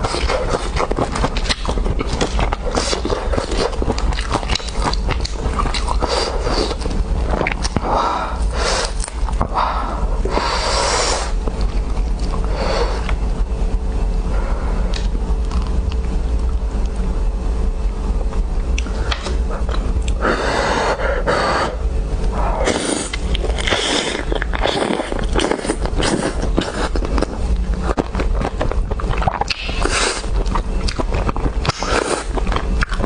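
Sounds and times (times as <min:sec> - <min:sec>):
chewing and mouth noises: 0:00.0 - 0:07.9, 0:11.3 - 0:13.2, 0:22.6 - 0:33.0
low hum: 0:00.0 - 0:33.0.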